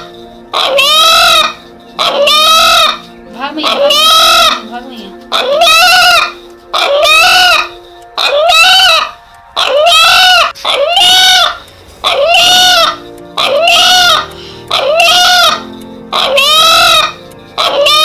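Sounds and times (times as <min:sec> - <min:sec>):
chicken calling: 0:00.0 - 0:04.7, 0:05.3 - 0:18.0.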